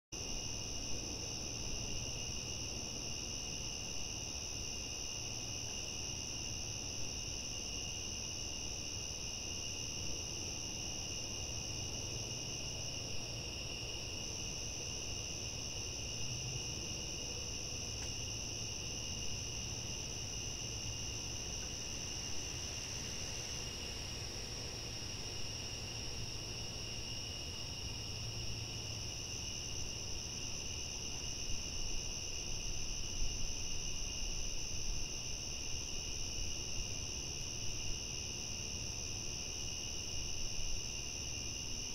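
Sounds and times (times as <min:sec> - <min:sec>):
crickets chirring: 0:00.2 - 0:41.9.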